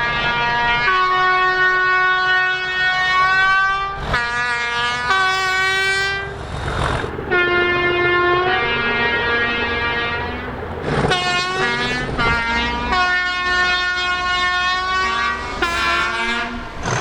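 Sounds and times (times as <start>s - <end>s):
two-tone train horn blasts: 0.0s - 17.0s
rushing noise: 6.4s - 13.6s.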